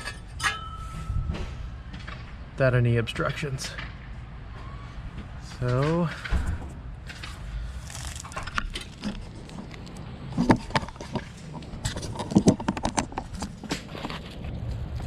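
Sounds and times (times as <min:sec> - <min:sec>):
hard parts clicking and clattering: 0:00.0 - 0:02.4, 0:05.2 - 0:14.4.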